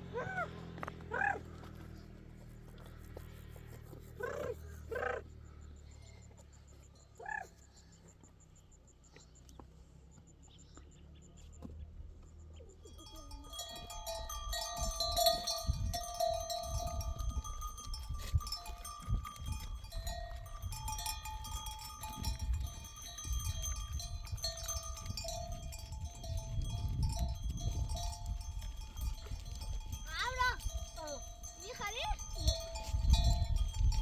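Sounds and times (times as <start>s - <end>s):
sheep bells clanking: 12.7s - 34.0s.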